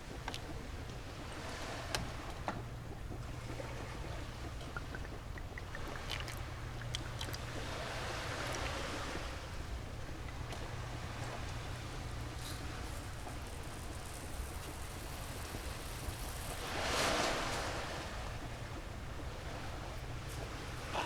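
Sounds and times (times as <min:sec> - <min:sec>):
sea waves washing on beach: 0:05.8 - 0:21.0.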